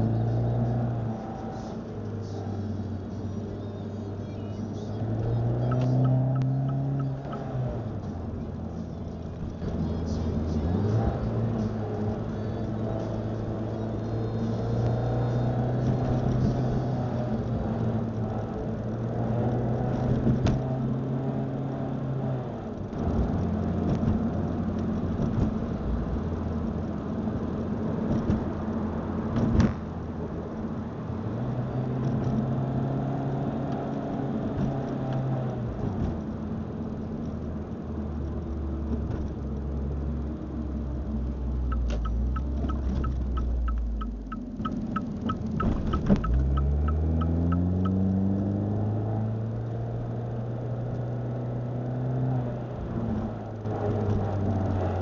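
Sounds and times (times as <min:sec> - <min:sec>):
car drivetrain running: 0:00.0 - 0:55.0
sharp clicks: 0:41.6 - 0:48.0.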